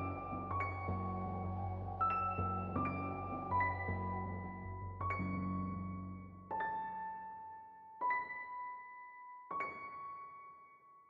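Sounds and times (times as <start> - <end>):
slow sparse piano: 0.0 - 11.0.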